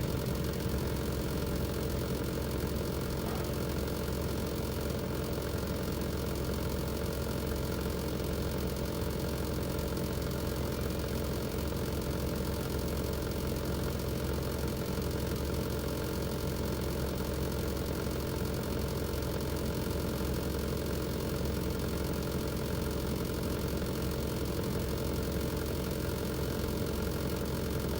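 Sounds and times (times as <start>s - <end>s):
air conditioner humming: 2.9s - 3.9s.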